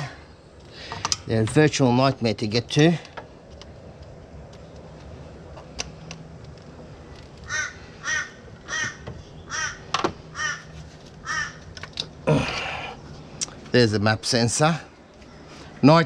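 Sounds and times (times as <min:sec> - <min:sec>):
faint background hum: 0:00.0 - 0:16.0
crow cawing: 0:07.5 - 0:11.7.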